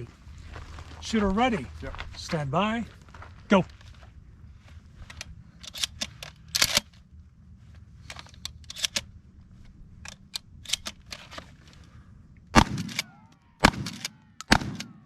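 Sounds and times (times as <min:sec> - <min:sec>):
shotgun metallic clicks: 0:05.1 - 0:07.0, 0:08.1 - 0:09.1, 0:10.0 - 0:11.4, 0:12.6 - 0:15.0
shotgun blast: 0:12.6 - 0:15.0.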